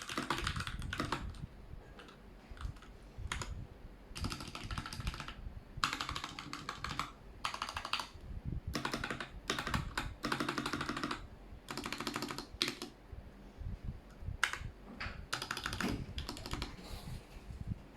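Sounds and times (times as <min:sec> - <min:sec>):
mechanical keyboard typing: 0:00.0 - 0:01.4, 0:02.0 - 0:03.5, 0:04.2 - 0:13.0, 0:14.4 - 0:14.7, 0:15.3 - 0:16.8.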